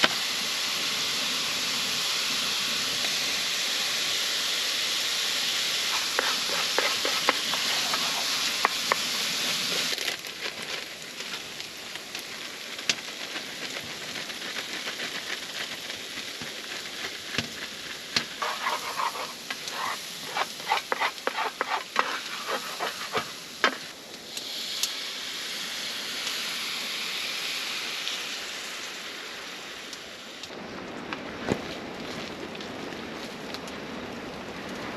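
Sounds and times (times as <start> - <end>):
food sizzling in a pan: 0.0 - 30.4
utensil scraping in a pan: 5.7 - 10.0, 17.9 - 23.9.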